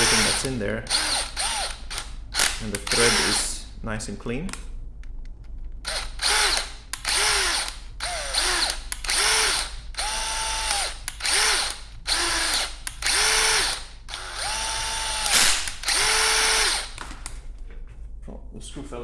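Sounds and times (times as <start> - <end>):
electric drill whining: 0.0 - 3.5, 5.8 - 17.0.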